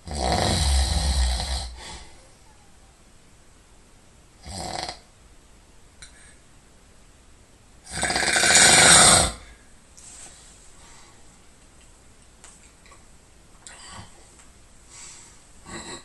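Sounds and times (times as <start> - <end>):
person snoring: 0.0 - 2.2, 4.4 - 5.0, 7.8 - 9.5, 15.6 - 16.0.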